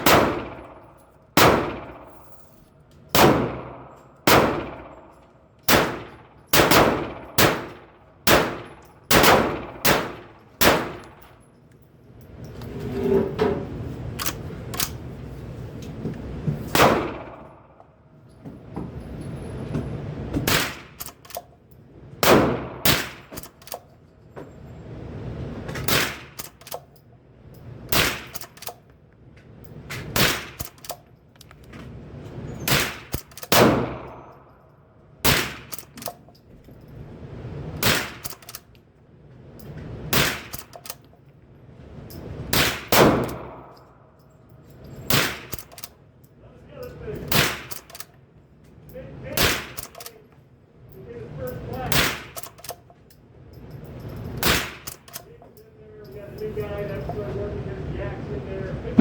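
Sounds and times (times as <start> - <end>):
rifle shots: 0.0 - 2.3, 3.1 - 11.4, 16.7 - 17.8, 20.4 - 21.5, 22.2 - 23.8, 25.8 - 26.8, 27.9 - 28.8, 30.0 - 31.0, 32.6 - 34.4, 35.2 - 36.2, 37.7 - 38.6, 40.0 - 41.0, 42.5 - 43.9, 45.1 - 46.0, 47.2 - 48.1, 49.3 - 50.2, 51.8 - 52.8, 54.4 - 55.3
rifle lever being worked: 14.1 - 15.1, 20.5 - 21.6, 22.9 - 24.0, 25.8 - 27.0, 27.9 - 28.9, 30.0 - 31.8, 32.7 - 34.3, 35.5 - 36.4, 38.1 - 38.8, 40.4 - 41.2, 45.1 - 46.0, 47.2 - 48.2, 49.3 - 50.4, 51.8 - 53.1, 54.0 - 55.6.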